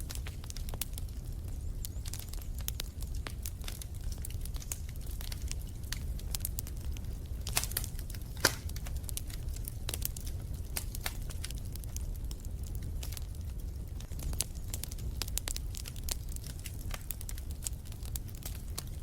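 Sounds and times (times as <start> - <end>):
fireplace fire crackling: 0.0 - 19.0.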